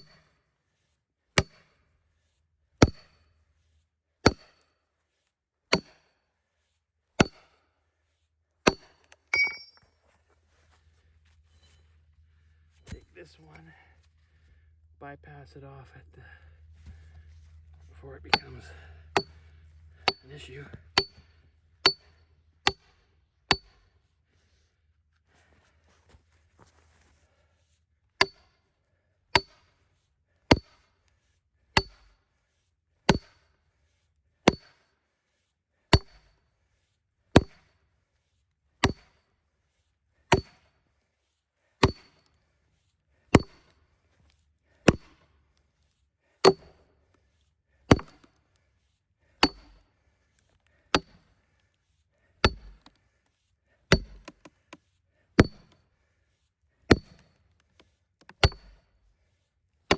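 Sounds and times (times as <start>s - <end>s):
hammer striking steel wedge: 1.4s - 1.7s, 2.8s - 3.2s, 4.2s - 4.6s, 5.7s - 6.1s, 7.2s - 7.5s, 8.7s - 9.8s, 18.3s - 18.6s, 19.2s - 19.4s, 20.1s - 20.4s, 21.0s - 23.8s, 28.2s - 28.5s, 29.4s - 29.6s, 30.5s - 30.8s, 31.8s - 32.1s, 33.1s - 33.4s, 34.5s - 34.8s, 35.9s - 36.3s, 38.8s - 39.2s, 40.3s - 40.6s, 41.8s - 42.2s, 43.4s - 43.7s, 46.5s - 46.8s, 47.9s - 48.3s, 49.4s - 49.8s, 51.0s - 51.2s, 52.4s - 52.9s, 53.9s - 54.3s, 55.4s - 55.8s, 56.9s - 57.2s, 58.4s - 58.8s.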